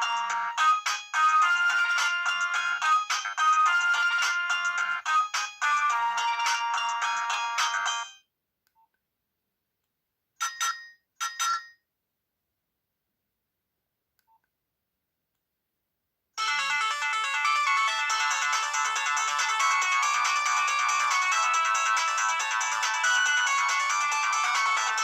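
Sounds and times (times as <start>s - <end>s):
phone ringtone melody: 0.0s - 8.2s, 10.4s - 11.8s, 16.4s - 25.0s.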